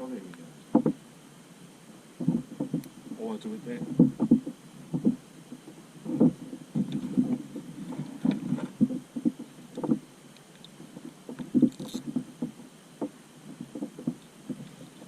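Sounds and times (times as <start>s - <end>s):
muffled knocks on inflatable boat hull: 0.7s - 1.0s, 2.2s - 2.9s, 3.7s - 10.0s.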